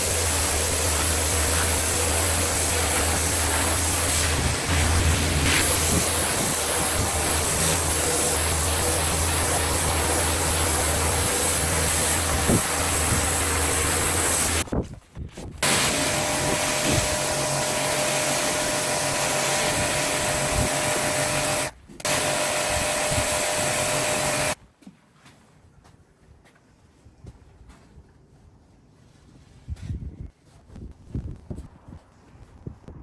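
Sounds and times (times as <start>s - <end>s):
pressure washer spraying: 0.0s - 14.7s, 15.6s - 24.6s.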